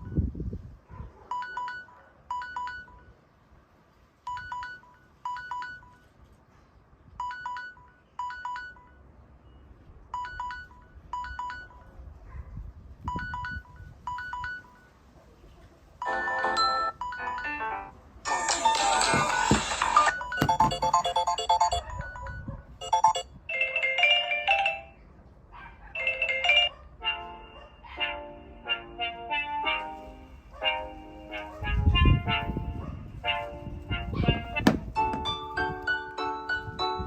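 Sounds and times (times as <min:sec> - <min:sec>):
trilling phone ringtone: 0:01.4 - 0:03.1, 0:04.3 - 0:06.1, 0:07.2 - 0:09.0, 0:10.2 - 0:11.9, 0:13.2 - 0:14.9, 0:16.0 - 0:24.9
louder ringtone melody: 0:18.3 - 0:23.3.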